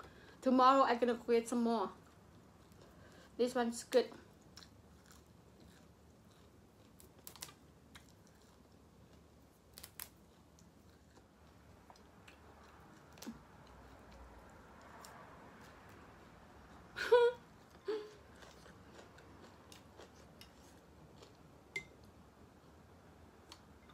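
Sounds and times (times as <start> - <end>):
faint chewing: 2.0 - 3.3, 4.2 - 16.0, 17.5 - 21.5.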